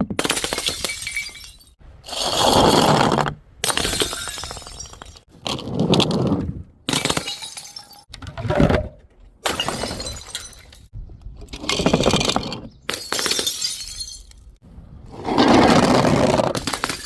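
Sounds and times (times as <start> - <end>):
glass bottles smashing: 0.2 - 2.2, 3.6 - 5.3, 6.9 - 8.1, 9.4 - 10.9, 12.9 - 14.6
tinkle of breaking glass shards: 12.9 - 14.6.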